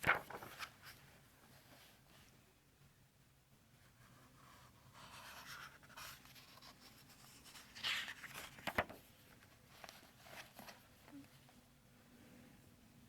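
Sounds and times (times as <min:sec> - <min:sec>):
book pages rustling: 0:00.0 - 0:02.3, 0:04.1 - 0:11.6.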